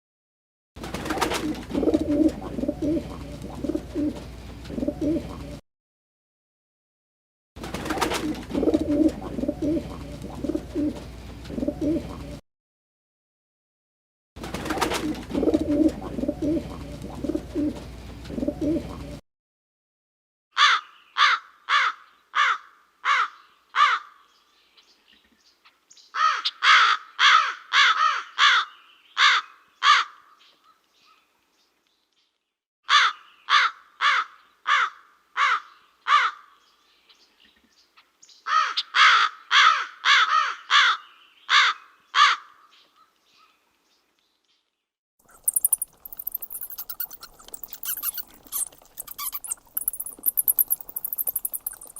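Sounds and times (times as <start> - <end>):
bird harsh calls: 45.3 - 51.9.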